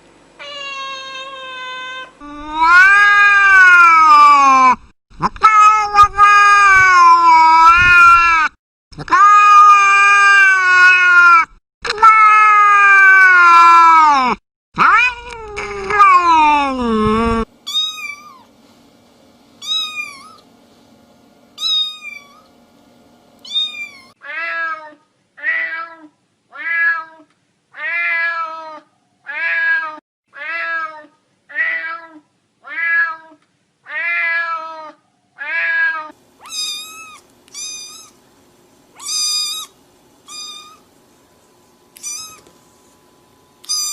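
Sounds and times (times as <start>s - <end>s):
cats meowing: 0.4s - 4.7s, 14.8s - 18.5s, 19.6s - 20.4s, 23.4s - 27.2s, 27.8s - 38.2s, 39.0s - 40.8s, 42.0s - 42.5s, 43.6s - 43.9s.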